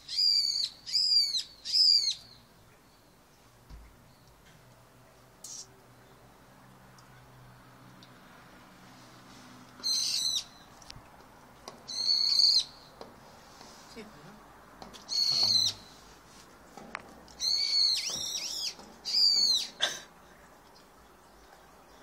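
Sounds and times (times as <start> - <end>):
bird chirping: 0.0 - 4.4, 9.8 - 10.8, 11.8 - 13.0, 15.0 - 16.0, 17.3 - 19.8.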